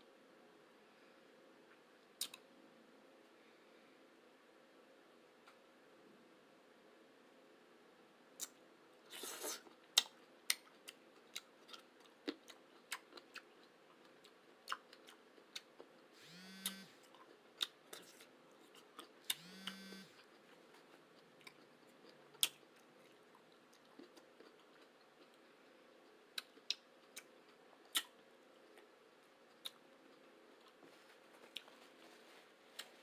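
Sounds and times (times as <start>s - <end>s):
person chewing food: 8.4s - 33.0s.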